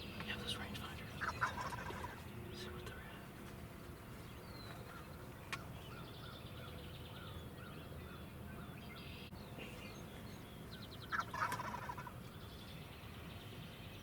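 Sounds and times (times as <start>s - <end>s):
turkey gobbling: 1.2s - 2.2s, 11.1s - 12.1s.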